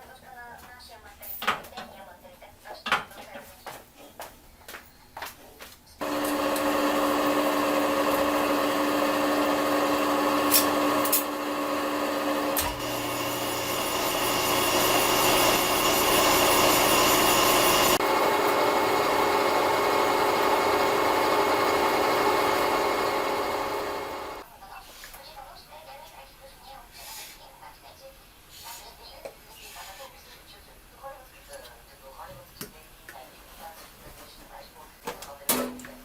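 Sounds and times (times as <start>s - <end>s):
lathe machining whine: 6.0s - 24.4s.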